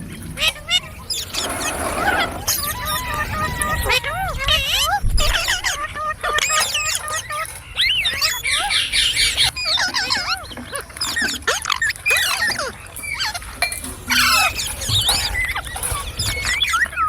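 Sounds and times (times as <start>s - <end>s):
parrot chattering: 1.1s - 3.8s.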